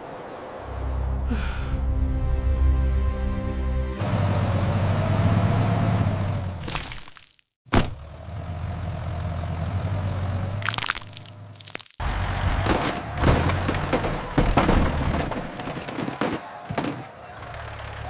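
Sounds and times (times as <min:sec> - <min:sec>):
tractor engine drone: 0:00.7 - 0:06.6, 0:07.7 - 0:16.1, 0:16.8 - 0:18.0
sharp cracking and crunching impacts: 0:10.6 - 0:17.4.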